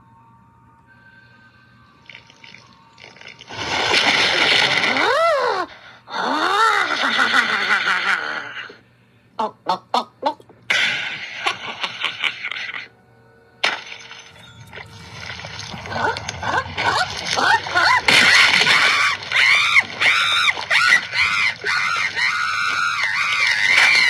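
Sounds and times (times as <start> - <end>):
noisy stretches with high cries: 14.2 - 24.0.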